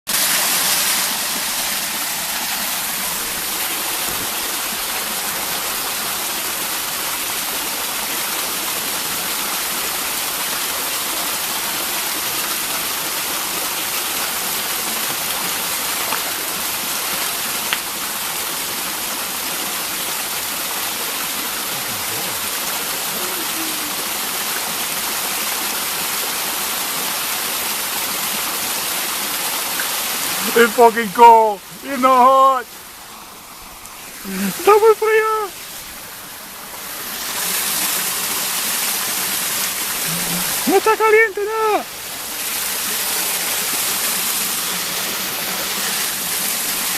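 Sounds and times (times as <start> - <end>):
stream water rushing: 0.1 - 46.9.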